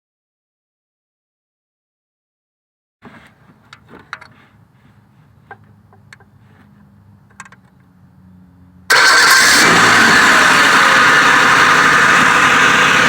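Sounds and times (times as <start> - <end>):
car engine starting and running: 5.6 - 13.0.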